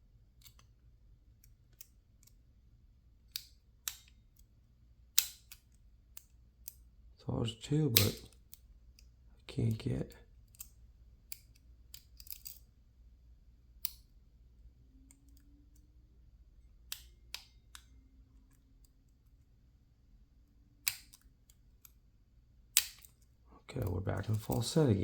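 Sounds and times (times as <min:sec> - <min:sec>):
lock pick clicking in padlock: 0:05.1 - 0:06.8, 0:07.9 - 0:08.6, 0:10.4 - 0:12.7, 0:20.7 - 0:21.9, 0:22.7 - 0:23.2.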